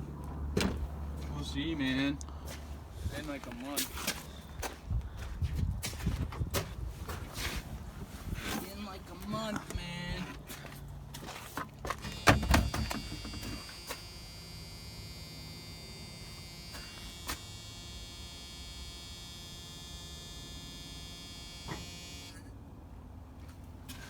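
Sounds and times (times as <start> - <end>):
heater blower fan whining: 12.0 - 22.5.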